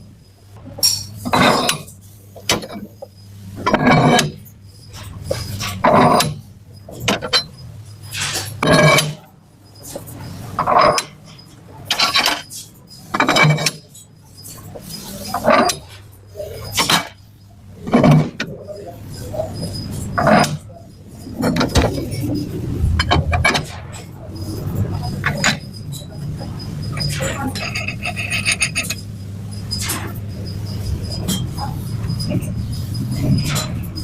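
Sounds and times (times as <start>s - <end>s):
faint low hum: 0.0s - 34.0s
metal scraping and clinking: 0.8s - 17.2s, 17.8s - 34.0s.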